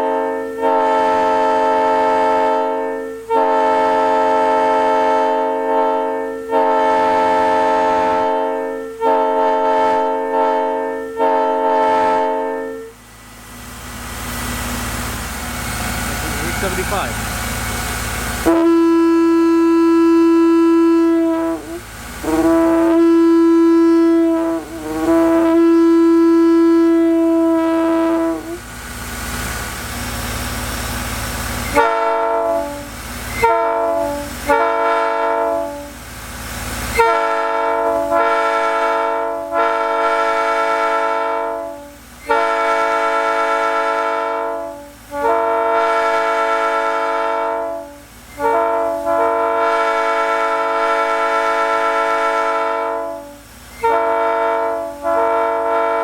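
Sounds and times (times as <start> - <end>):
single-note locomotive air horn: 0.0 - 56.0
three-chime air horn: 31.6 - 35.9.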